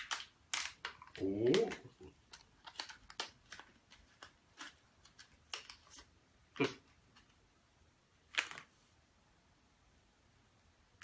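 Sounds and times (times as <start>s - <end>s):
packaging rustling and clicking: 0.0s - 6.1s.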